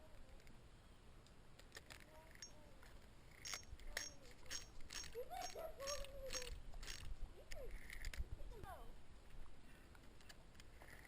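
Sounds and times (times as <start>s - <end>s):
faint metallic clicks: 1.2s - 8.2s
light jingling: 2.3s - 2.7s, 3.4s - 7.1s.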